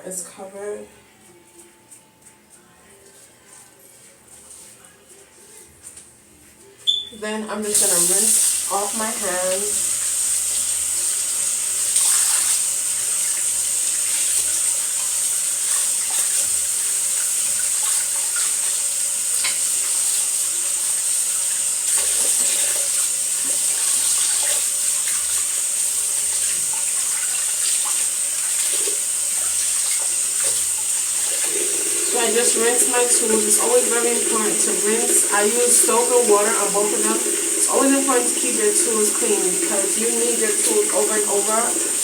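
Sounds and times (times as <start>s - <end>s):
tap water running into sink: 7.7s - 42.0s.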